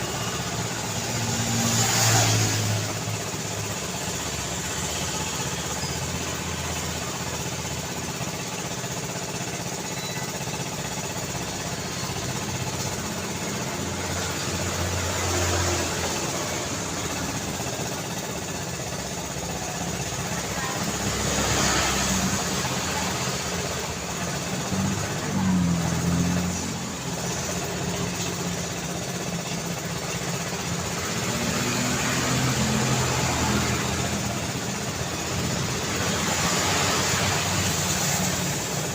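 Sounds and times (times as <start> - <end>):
road traffic noise: 0.0 - 38.9
vehicles passing close: 0.0 - 38.9.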